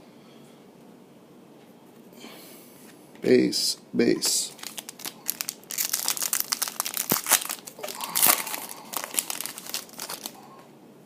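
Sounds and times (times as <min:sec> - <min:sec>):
foil wrapper crinkling: 0:04.5 - 0:10.5.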